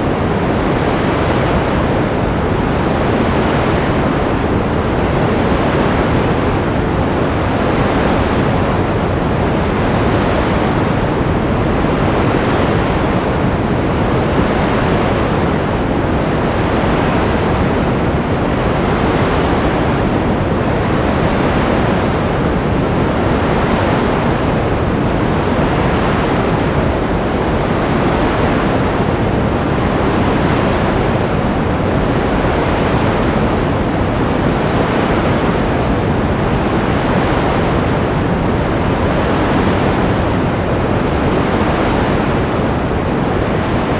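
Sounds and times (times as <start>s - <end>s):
ocean surf: 0.0s - 43.9s.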